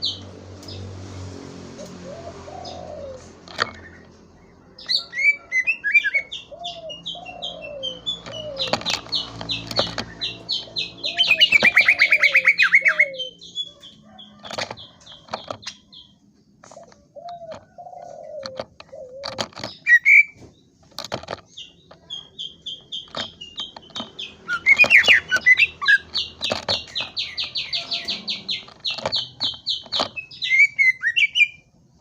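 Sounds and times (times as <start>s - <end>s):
sharp clicks: 3.3s - 4.2s, 8.0s - 12.0s, 20.8s - 30.6s
bird singing high chirps: 4.8s - 16.2s, 21.5s - 31.7s.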